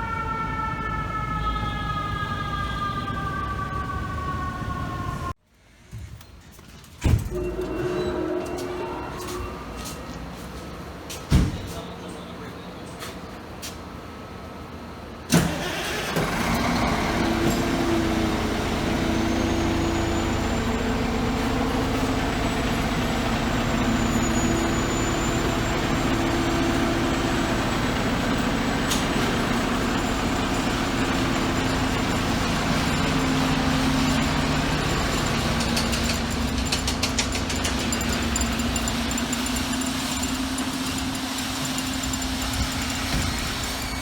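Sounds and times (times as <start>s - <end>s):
truck engine running at low revs: 16.0s - 44.0s.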